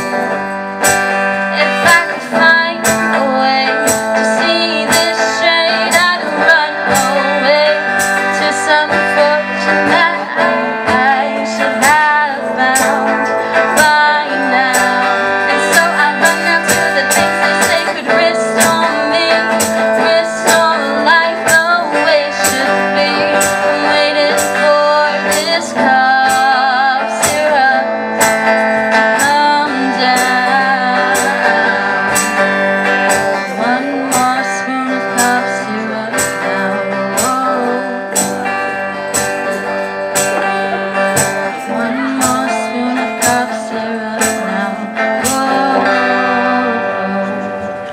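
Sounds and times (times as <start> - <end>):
strummed guitar: 0.0 - 47.9
steady beat: 38.1 - 42.6.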